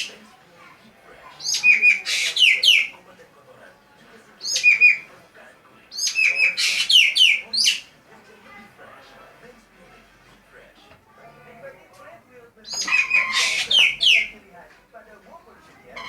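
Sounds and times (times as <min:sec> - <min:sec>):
magpie calling sharp notes: 0:01.4 - 0:02.9, 0:04.4 - 0:05.1, 0:06.0 - 0:07.8, 0:12.7 - 0:14.4.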